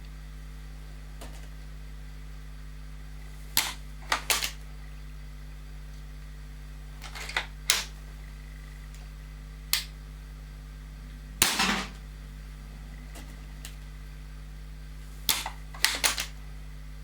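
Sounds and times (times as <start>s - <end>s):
low electrical hum: 0.0s - 17.0s
air rifle clicks and snaps: 15.3s - 16.4s.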